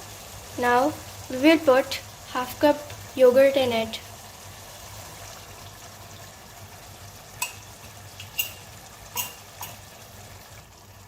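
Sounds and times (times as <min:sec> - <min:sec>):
curry sizzling in a pan: 0:00.0 - 0:11.0
utensil clicking against pan: 0:07.4 - 0:09.8.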